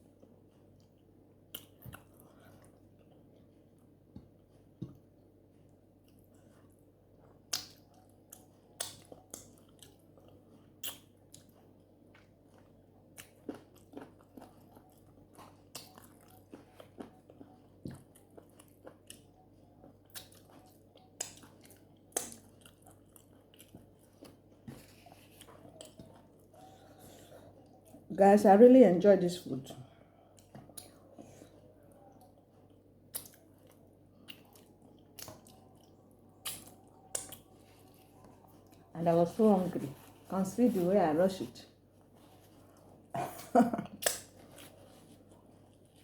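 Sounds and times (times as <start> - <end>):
person chewing: 0.0 - 28.1, 30.2 - 38.9, 42.0 - 46.0
lip smacks and clicks: 8.8 - 9.5, 43.9 - 44.4.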